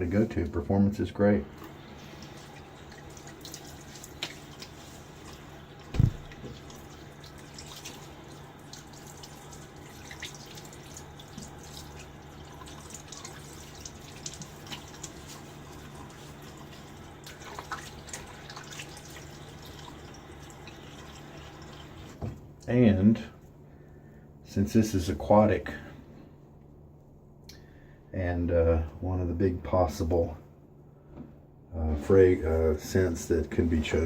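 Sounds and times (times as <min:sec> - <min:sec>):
water dripping in sink: 0:02.2 - 0:22.1
dull thump: 0:05.9 - 0:06.4.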